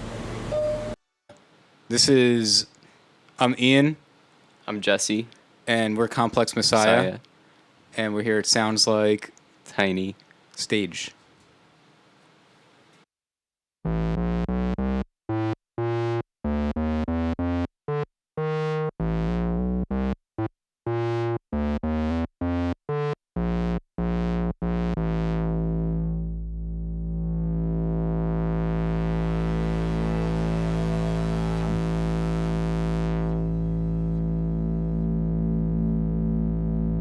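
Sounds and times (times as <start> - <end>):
synthesizer chords: 13.9 - 37.0.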